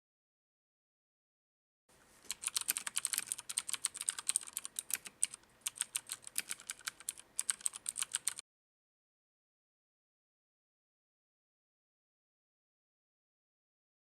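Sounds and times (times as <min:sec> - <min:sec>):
mechanical keyboard typing: 0:02.3 - 0:08.4.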